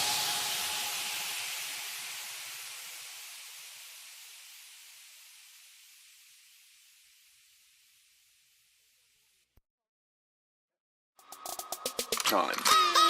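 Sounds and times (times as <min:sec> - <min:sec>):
steady hiss: 0:00.0 - 0:09.5.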